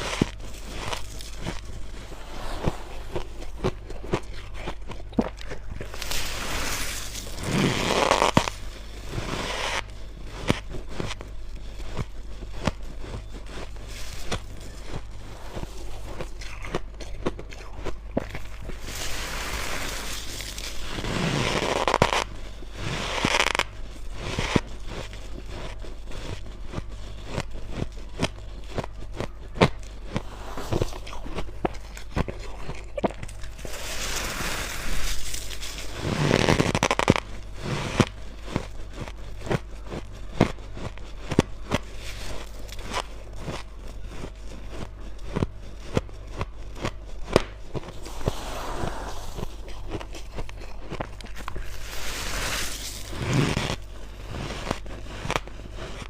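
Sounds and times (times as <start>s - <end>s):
crunching bites of ice: 2.6s - 11.3s, 11.9s - 56.0s.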